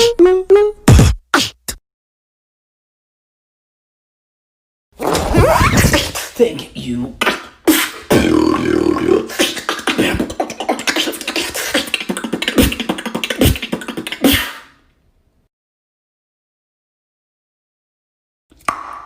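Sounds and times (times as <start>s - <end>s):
person beatboxing: 7.2s - 14.8s.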